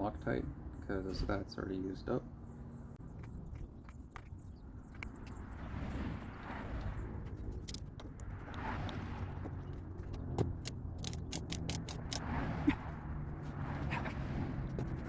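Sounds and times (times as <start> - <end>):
handling noise: 7.2 - 12.2
ratchet wrench clicking: 10.6 - 12.2.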